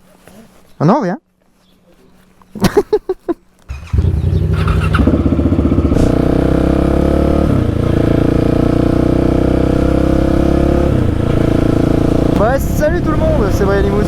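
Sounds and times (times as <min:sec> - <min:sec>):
motorcycle engine starting and running: 0:03.7 - 0:14.0.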